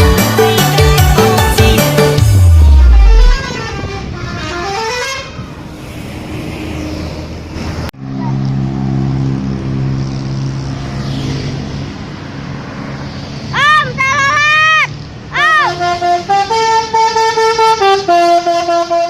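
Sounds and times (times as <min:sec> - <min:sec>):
bus multi-tone horn melody: 0:00.0 - 0:05.6, 0:15.5 - 0:19.0.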